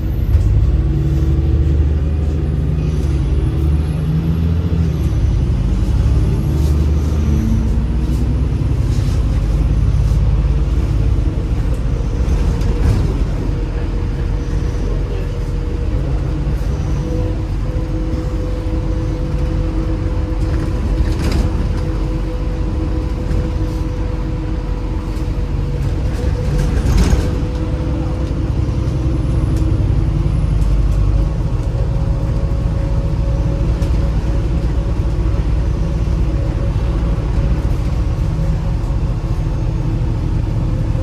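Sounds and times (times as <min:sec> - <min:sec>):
bus engine and road rumble: 0:00.0 - 0:41.0
bus rattles: 0:00.0 - 0:41.0.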